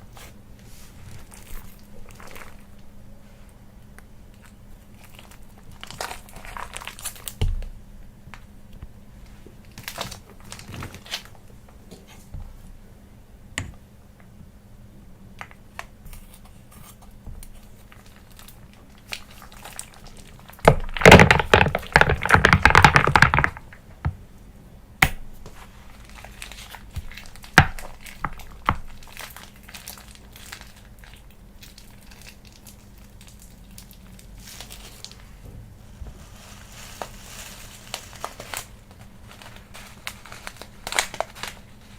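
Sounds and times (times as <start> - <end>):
containers clicking and crinkling: 15.4 - 24.1, 36.2 - 41.9
dense crackling noise: 17.5 - 24.1.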